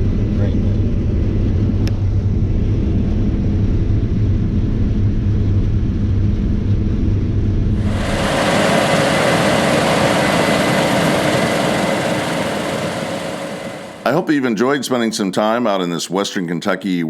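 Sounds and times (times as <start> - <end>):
combine engine rumble: 7.8 - 14.3
loud hissing rush: 7.8 - 14.3
faint steady whine: 7.8 - 14.4.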